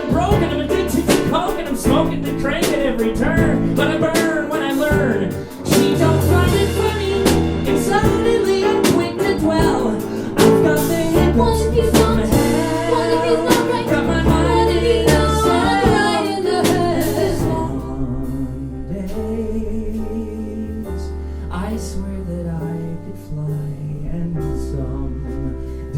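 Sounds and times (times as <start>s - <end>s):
drums: 0.0s - 19.3s
person singing: 0.0s - 25.6s
bass: 0.0s - 25.9s
piano: 0.0s - 25.9s.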